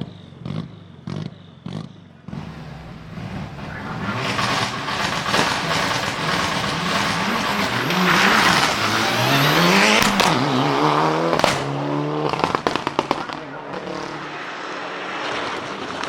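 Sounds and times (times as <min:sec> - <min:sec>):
rally car engine revving past: 0:02.3 - 0:16.0
anti-lag exhaust cracks: 0:11.2 - 0:14.1.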